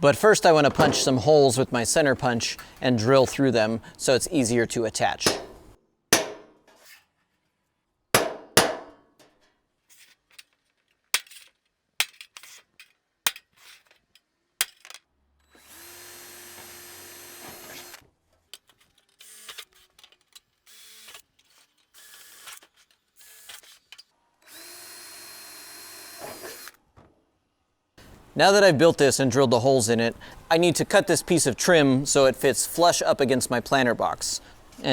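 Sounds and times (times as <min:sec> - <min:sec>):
center punch tapping metal gutter: 0:05.3 - 0:06.5, 0:08.2 - 0:09.0
cordless drill drilling: 0:15.5 - 0:18.0, 0:19.2 - 0:19.7, 0:20.7 - 0:21.2, 0:21.9 - 0:26.8.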